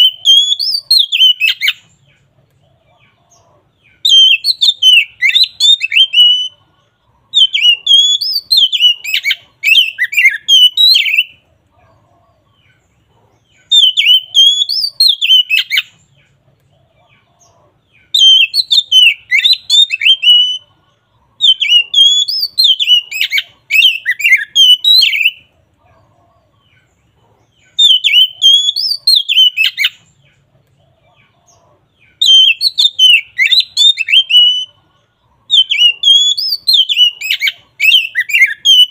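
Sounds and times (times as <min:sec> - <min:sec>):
bird singing whistled notes: 0:00.0 - 0:02.0, 0:03.8 - 0:06.6, 0:07.3 - 0:11.4, 0:13.5 - 0:16.0, 0:17.9 - 0:20.7, 0:21.4 - 0:25.5, 0:27.6 - 0:30.3, 0:32.0 - 0:34.8, 0:35.5 - 0:38.9.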